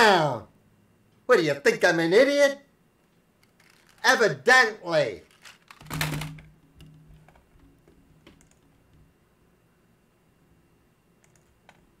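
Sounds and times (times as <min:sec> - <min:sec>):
faint clicks and taps: 0:06.8 - 0:09.1.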